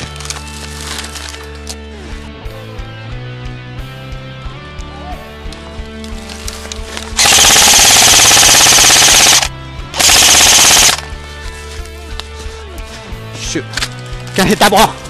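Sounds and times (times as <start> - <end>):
airsoft gun full-auto bursts: 7.2 - 11.1.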